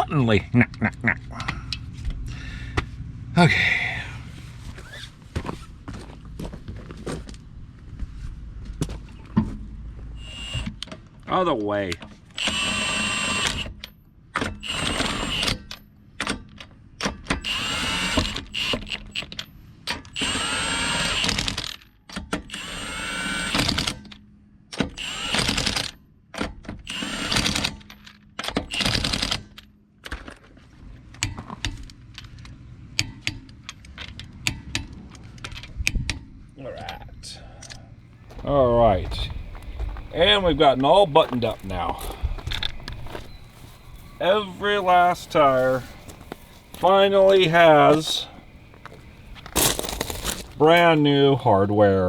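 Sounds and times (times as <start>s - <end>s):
impact wrench whine: 10.2s - 10.9s, 12.4s - 15.8s, 17.3s - 21.7s, 22.4s - 24.0s, 24.8s - 25.9s, 26.8s - 27.9s, 28.6s - 29.4s, 38.2s - 51.0s.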